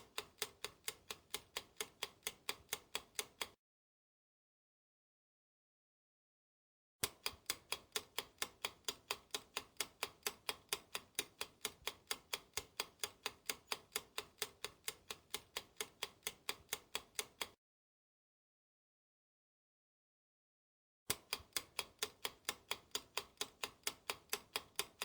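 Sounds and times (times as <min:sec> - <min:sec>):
clock ticking: 0:00.0 - 0:03.6, 0:07.0 - 0:17.6, 0:21.1 - 0:25.0.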